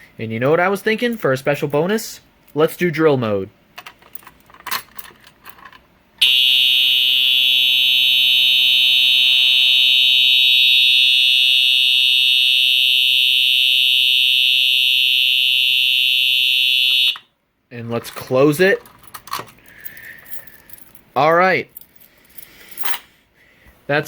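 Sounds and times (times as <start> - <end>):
fire alarm horn tone: 6.2 - 17.3.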